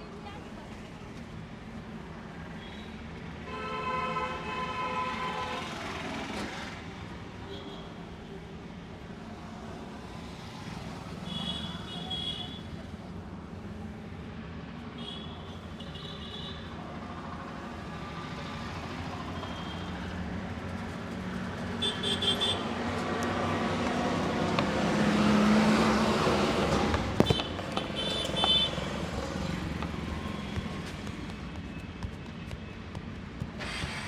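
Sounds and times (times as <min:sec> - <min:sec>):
vehicle passing close by: 0:22.6 - 0:27.2.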